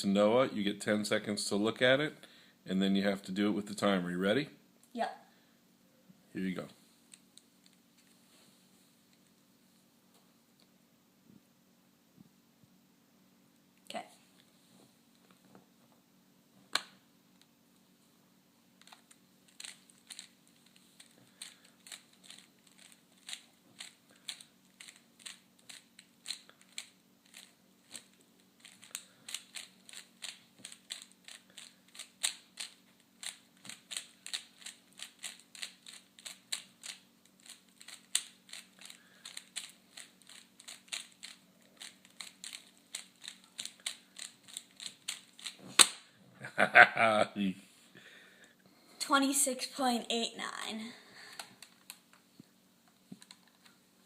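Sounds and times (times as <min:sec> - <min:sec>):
puzzle cube plastic clicks: 0:18.8 - 0:46.0.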